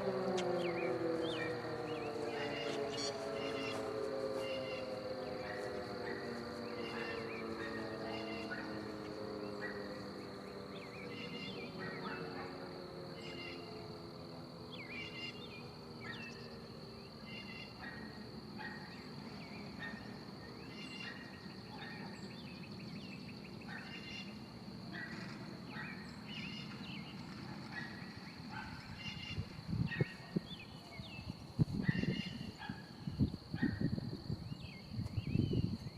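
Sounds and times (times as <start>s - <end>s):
warning siren winding down: 0.0s - 18.4s
birds chirping: 0.0s - 33.4s
high insect drone: 0.0s - 35.9s.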